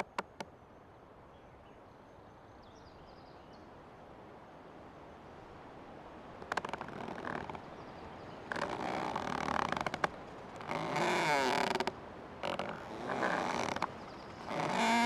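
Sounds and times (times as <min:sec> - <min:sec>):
tree creaking: 0:00.0 - 0:00.5, 0:06.4 - 0:07.7, 0:08.4 - 0:15.0.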